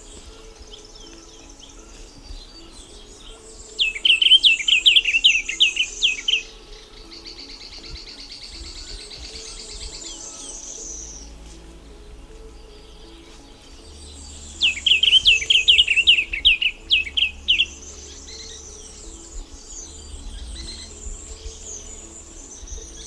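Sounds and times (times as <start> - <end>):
bird singing sharp notes: 0.0 - 23.0
faint background birds: 0.0 - 23.0
high bird trill: 0.0 - 23.0.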